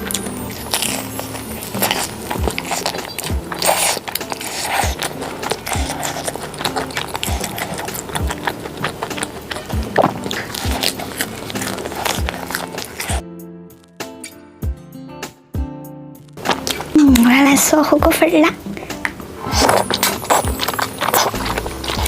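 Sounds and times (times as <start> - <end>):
crunching and chewing food: 0.0 - 14.4, 16.3 - 17.6, 18.8 - 22.0
music with a steady beat: 8.2 - 11.6, 12.2 - 17.2.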